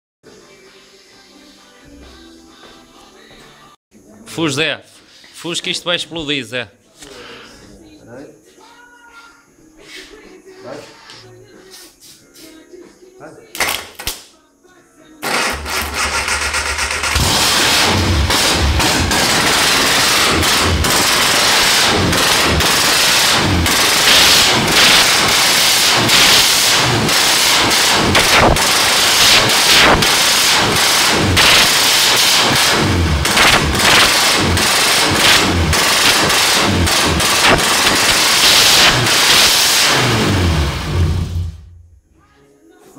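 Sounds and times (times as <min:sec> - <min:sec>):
small engine running rough: 0:15.2 - 0:41.6
crackle of engine pops: 0:24.0 - 0:39.6.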